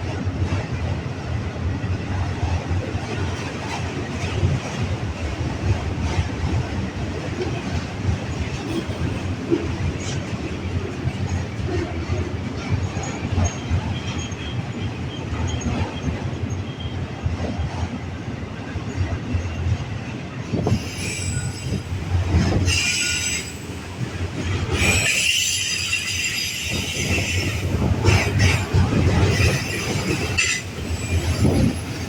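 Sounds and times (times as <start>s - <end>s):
train wheels rumbling on rail: 0.0s - 32.0s
high-pitched wheel squeal: 20.7s - 23.8s, 24.7s - 32.0s.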